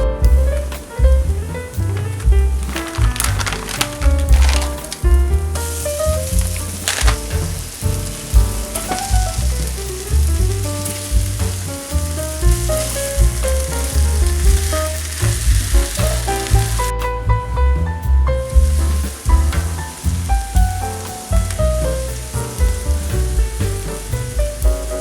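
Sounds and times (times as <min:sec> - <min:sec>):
instrumental background music: 0:00.0 - 0:25.0
food sizzling in frying pan: 0:05.6 - 0:16.9.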